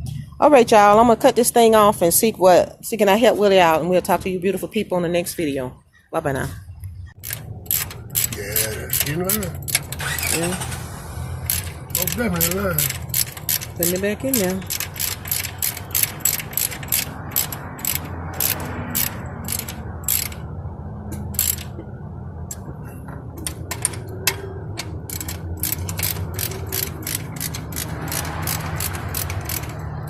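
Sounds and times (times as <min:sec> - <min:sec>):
ratchet wrench clicking: 0:07.2 - 0:10.4, 0:11.4 - 0:20.4, 0:21.2 - 0:21.8, 0:23.4 - 0:30.0.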